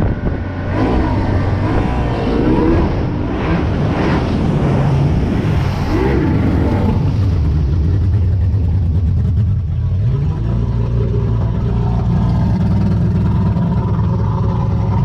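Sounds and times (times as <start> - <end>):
rush of wind and water: 0.0 - 15.0
outboard motor running: 6.4 - 15.0.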